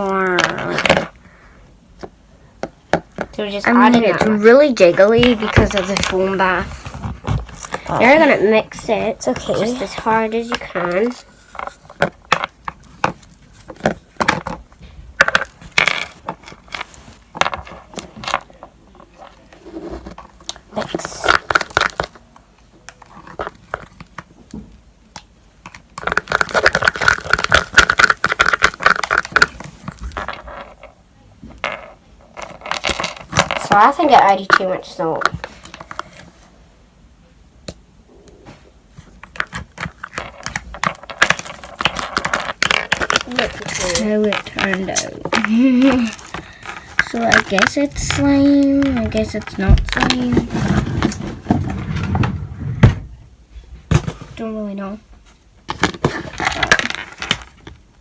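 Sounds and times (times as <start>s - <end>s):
slime being stirred in bowl: 3.3s - 14.6s, 39.1s - 51.6s.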